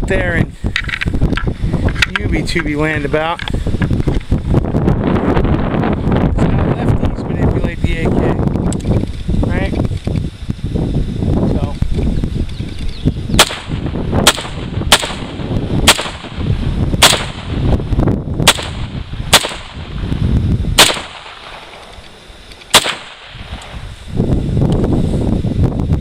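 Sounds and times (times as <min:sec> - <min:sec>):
wind rumbling on microphone: 0:00.0 - 0:26.0
rifle shots: 0:13.4 - 0:17.7, 0:18.4 - 0:20.0, 0:20.8 - 0:22.0, 0:22.7 - 0:23.8.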